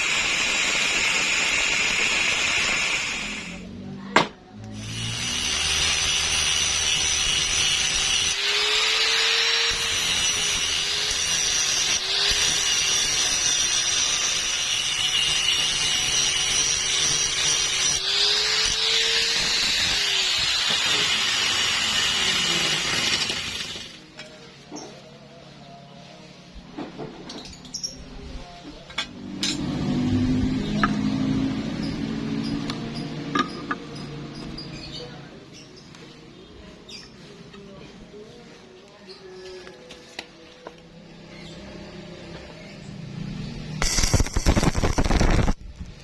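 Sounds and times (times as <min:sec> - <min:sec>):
power tool grinding metal: 0:00.0 - 0:03.6, 0:04.7 - 0:24.0, 0:43.8 - 0:45.6.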